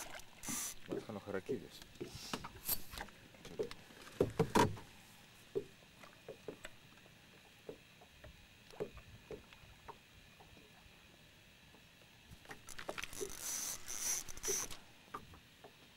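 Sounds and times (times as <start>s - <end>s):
water splashing: 0.0s - 1.2s.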